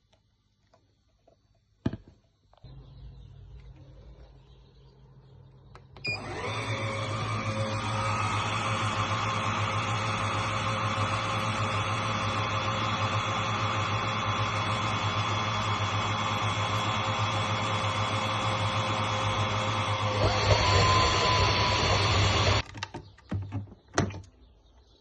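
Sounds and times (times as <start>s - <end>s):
vacuum cleaner running: 6.0s - 22.6s.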